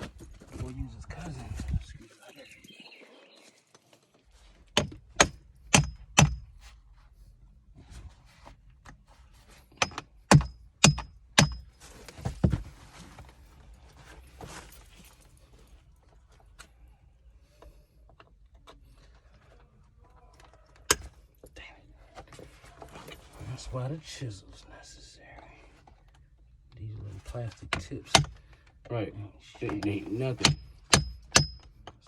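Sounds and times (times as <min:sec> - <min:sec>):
hammer striking chisel on metal: 0:04.8 - 0:06.4, 0:09.8 - 0:11.7, 0:30.4 - 0:31.7.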